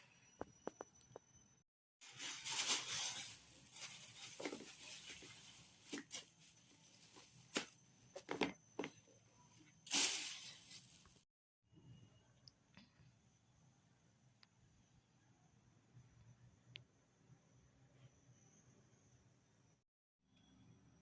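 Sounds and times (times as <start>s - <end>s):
packaging rustling and tearing: 2.0s - 7.7s.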